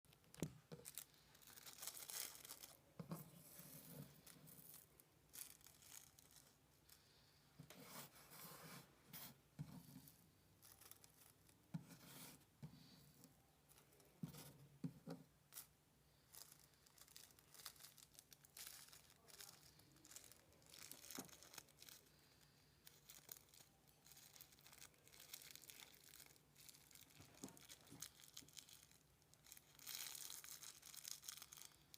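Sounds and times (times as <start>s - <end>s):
rolling paper crinkling: 0.1s - 7.0s, 16.4s - 22.2s, 22.8s - 31.9s.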